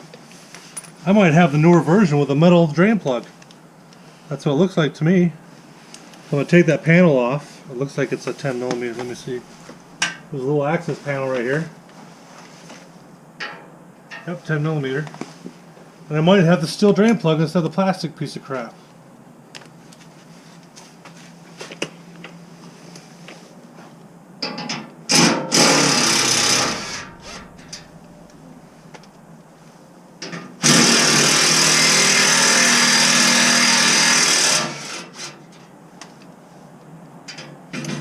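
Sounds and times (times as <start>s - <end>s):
power tool running: 25.1s - 28.1s, 30.6s - 35.4s.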